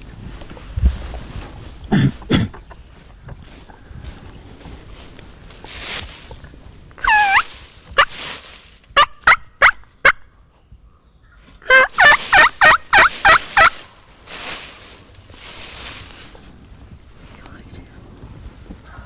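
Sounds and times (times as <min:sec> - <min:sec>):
turkey clucks: 0:02.0 - 0:04.0, 0:07.0 - 0:08.2, 0:09.0 - 0:10.3, 0:11.4 - 0:14.0
turkey yelps: 0:07.0 - 0:08.2, 0:09.0 - 0:10.2, 0:11.6 - 0:13.9.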